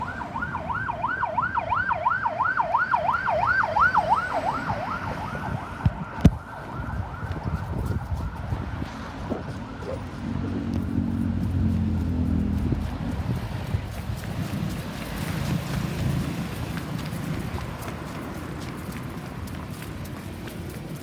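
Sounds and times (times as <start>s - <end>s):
ambulance siren yelping: 0.0s - 11.0s
low road noise: 0.0s - 21.0s.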